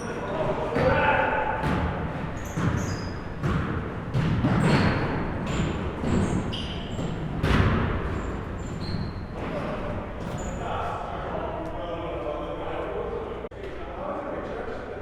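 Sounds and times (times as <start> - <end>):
sneaker squeaks: 0.0 - 11.0
basketballs bouncing on gym floor: 0.7 - 10.5.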